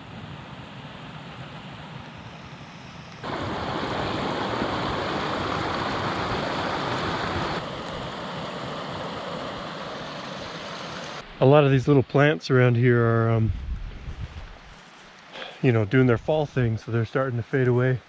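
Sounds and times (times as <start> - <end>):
mountain stream rushing: 3.2 - 11.4.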